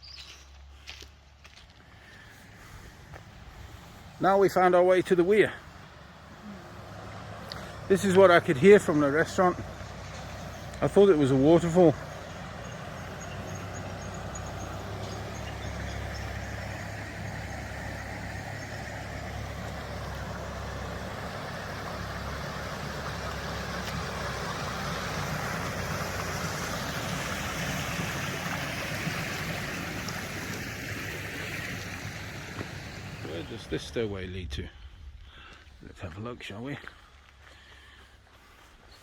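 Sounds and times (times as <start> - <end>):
water rushing over a weir: 4.0 - 33.6.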